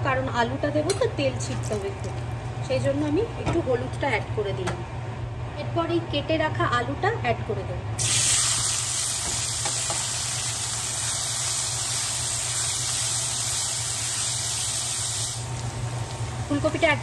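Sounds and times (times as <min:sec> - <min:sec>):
potatoes sizzling in hot oil: 0:08.0 - 0:17.0.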